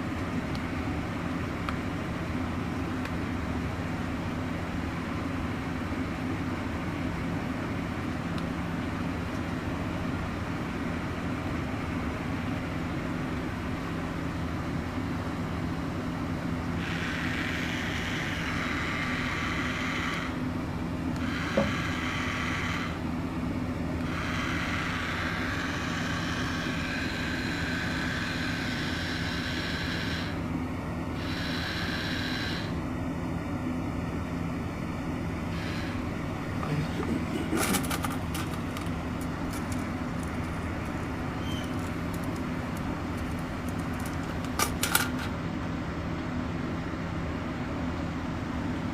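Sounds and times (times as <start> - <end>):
toy train electric motor humming: 15.6 - 23.3, 23.9 - 32.9, 35.2 - 45.4
higher-pitched whirring: 16.8 - 20.5, 21.2 - 23.0, 24.0 - 30.4, 31.2 - 32.8.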